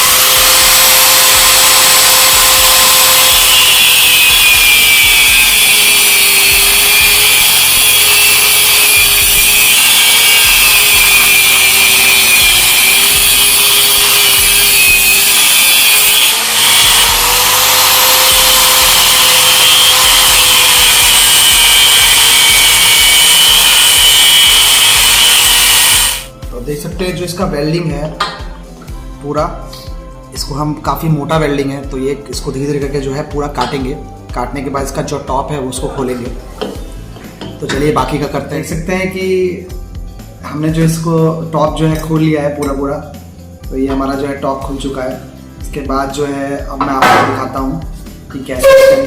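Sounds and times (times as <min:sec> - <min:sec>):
angle grinder cutting metal: 0:00.0 - 0:26.3, 0:48.5 - 0:49.0.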